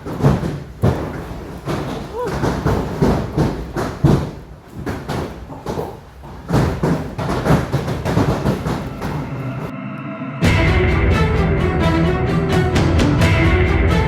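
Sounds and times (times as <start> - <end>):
heavy hail thuds: 0.0 - 9.5.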